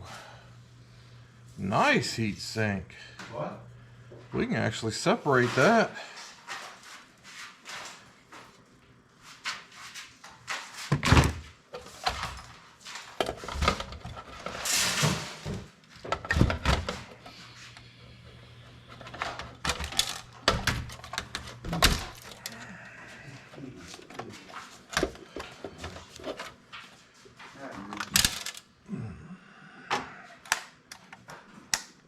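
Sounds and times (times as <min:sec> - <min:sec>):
computer parts clattering: 0:19.0 - 0:22.6, 0:27.9 - 0:28.6.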